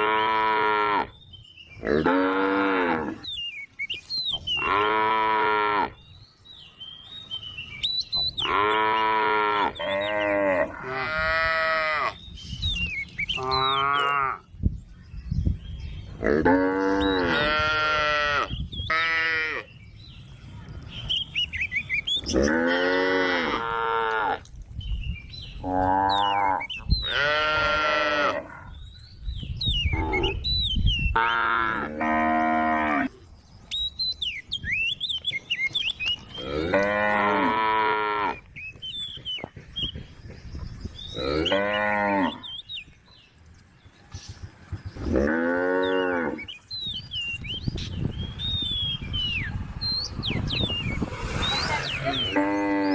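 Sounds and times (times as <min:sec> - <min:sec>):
cows mooing: 0:00.0 - 0:01.1, 0:01.8 - 0:03.2, 0:04.6 - 0:06.0, 0:08.4 - 0:12.2, 0:13.4 - 0:14.4, 0:16.2 - 0:19.7, 0:22.2 - 0:24.5, 0:25.6 - 0:28.7, 0:36.4 - 0:38.4, 0:41.1 - 0:42.4, 0:45.0 - 0:46.5, 0:51.0 - 0:52.9
birds chirping faintly: 0:11.8 - 0:52.9.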